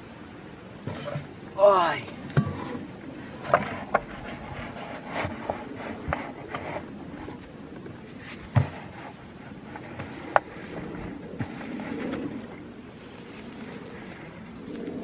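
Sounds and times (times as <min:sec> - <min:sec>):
hands rubbing and scraping materials: 0:03.3 - 0:15.0.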